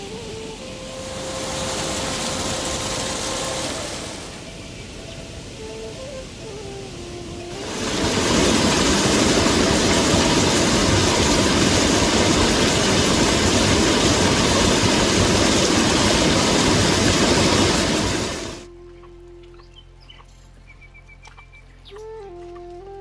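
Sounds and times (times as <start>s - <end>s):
heavy rain pouring: 0.0s - 18.7s.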